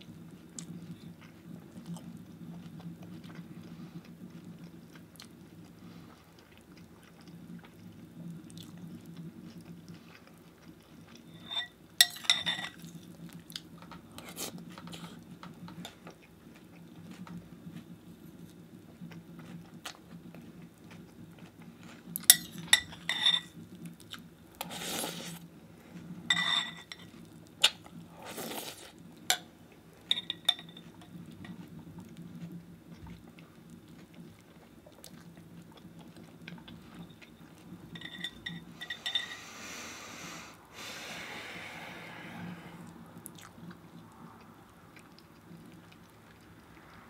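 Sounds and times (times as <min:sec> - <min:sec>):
spoon clinking on bowl: 0:11.4 - 0:12.8, 0:26.3 - 0:27.1, 0:38.0 - 0:39.4
eating sounds: 0:26.9 - 0:47.0.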